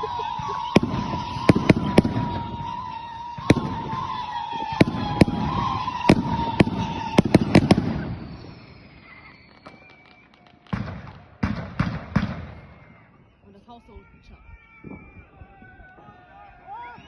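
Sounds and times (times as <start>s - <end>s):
high whistling tone: 0.0s - 10.8s, 12.4s - 15.5s, 16.7s - 17.0s
firework bangs: 0.0s - 13.4s.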